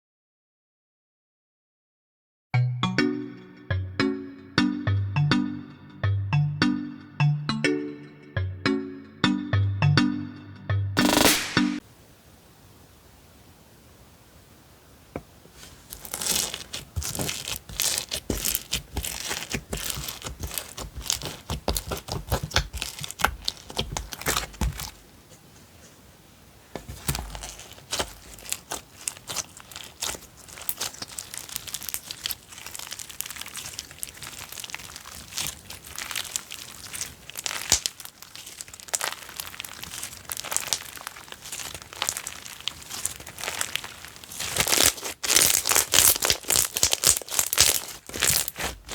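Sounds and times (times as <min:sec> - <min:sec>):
slime squeezed by hand crackling: 0:15.6 - 0:25.0, 0:26.9 - 0:48.9.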